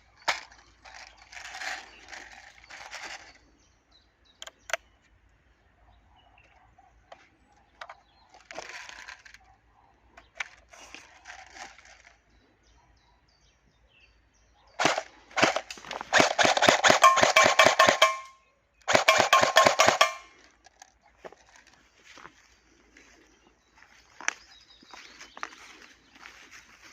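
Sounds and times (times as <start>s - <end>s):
faint handling noises: 6.5s - 12.2s, 20.0s - 26.9s
airsoft rifle firing bursts: 14.8s - 18.3s, 18.9s - 20.3s.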